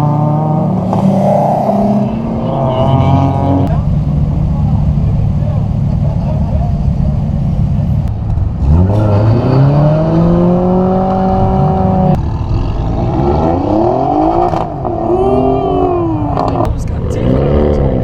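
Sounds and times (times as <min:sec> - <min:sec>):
car engine revving hard: 0:00.0 - 0:03.8, 0:08.6 - 0:15.5.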